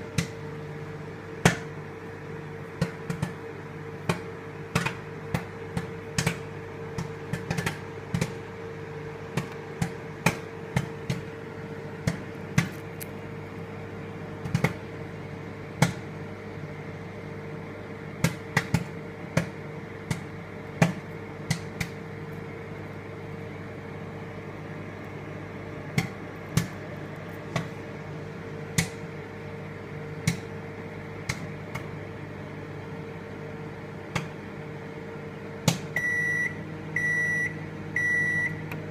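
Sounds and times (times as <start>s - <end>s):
popcorn popping: 0.0s - 0.5s, 1.4s - 1.8s, 2.8s - 3.4s, 4.0s - 8.5s, 9.2s - 11.4s, 12.0s - 13.2s, 14.4s - 14.8s, 15.8s - 16.1s, 18.1s - 22.5s, 25.8s - 27.8s, 28.7s - 29.1s, 30.2s - 30.5s, 31.2s - 31.9s, 35.6s - 36.2s
microwave oven humming: 0.0s - 38.9s.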